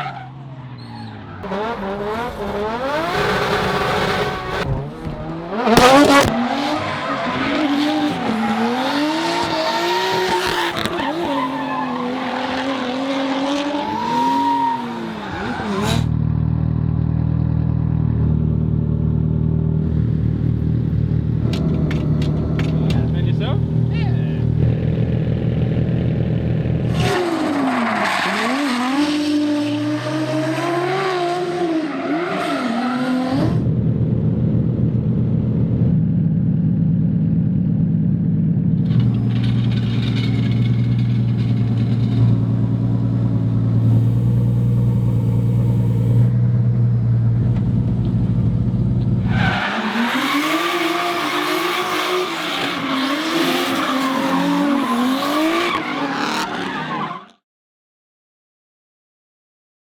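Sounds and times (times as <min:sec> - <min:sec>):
car engines revving hard: 0:00.0 - 0:16.2, 0:19.8 - 0:36.0, 0:38.8 - 0:57.0
car engine running steadily: 0:01.4 - 0:06.3, 0:16.1 - 0:27.0, 0:33.6 - 0:49.5.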